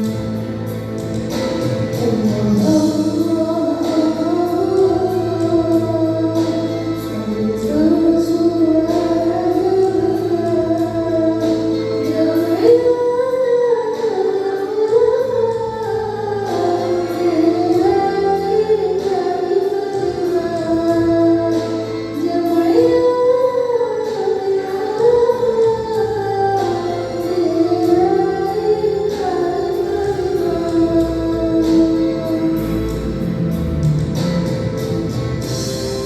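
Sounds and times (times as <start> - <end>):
instrumental accompaniment: 0.0 - 36.0
steady percussion beat: 30.4 - 36.0.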